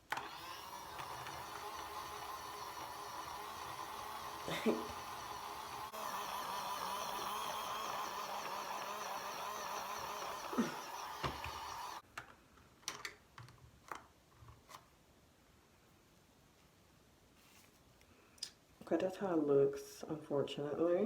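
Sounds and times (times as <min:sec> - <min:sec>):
small motor whirring: 0:00.0 - 0:12.0.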